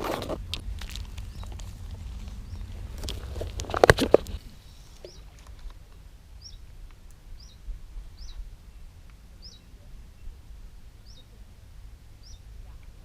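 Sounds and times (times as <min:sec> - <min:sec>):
low steady rumble: 0:00.0 - 0:13.0
small bird chirping: 0:00.9 - 0:03.4, 0:04.4 - 0:05.4, 0:06.4 - 0:06.7, 0:07.4 - 0:10.4, 0:11.0 - 0:11.4, 0:12.2 - 0:12.9.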